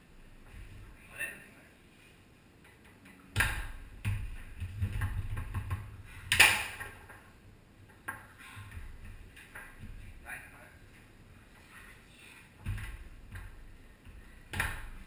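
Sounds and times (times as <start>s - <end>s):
foosball ball clacks: 2.7s - 10.0s.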